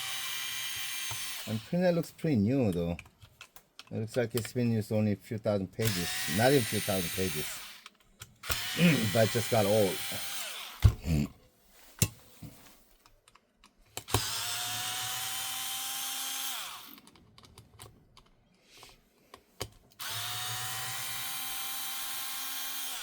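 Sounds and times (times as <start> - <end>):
electric screwdriver running: 0.0 - 1.7, 5.8 - 10.8, 14.0 - 17.0, 20.0 - 23.0.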